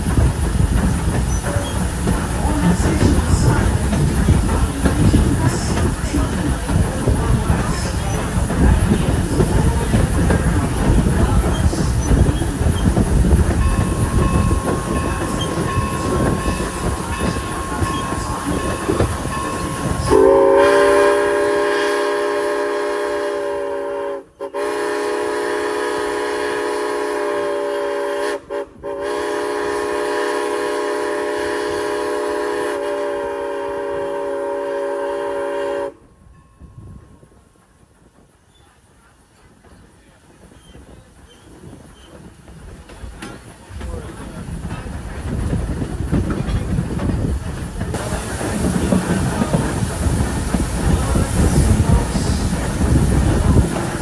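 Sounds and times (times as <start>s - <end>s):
train rumbling on rails: 0.0s - 54.0s
steam locomotive whistle: 13.8s - 36.1s.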